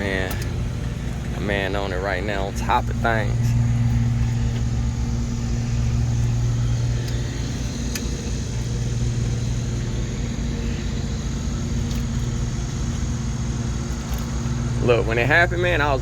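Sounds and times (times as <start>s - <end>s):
car engine idling: 0.0s - 16.0s.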